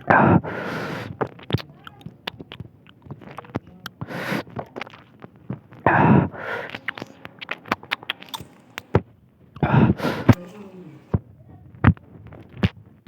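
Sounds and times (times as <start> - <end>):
wet chewing: 0.0 - 11.2
lip-smacking clicks: 1.1 - 5.8, 6.4 - 10.8.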